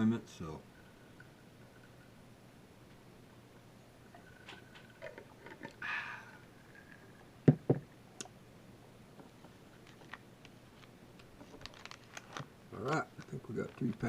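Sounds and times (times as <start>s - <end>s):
card pack rustle: 10.8s - 14.0s.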